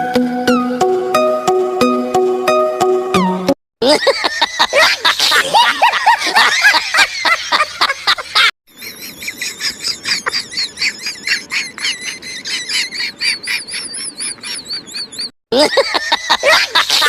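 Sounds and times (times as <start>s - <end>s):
high-pitched warbling chirps: 11.2s - 15.3s.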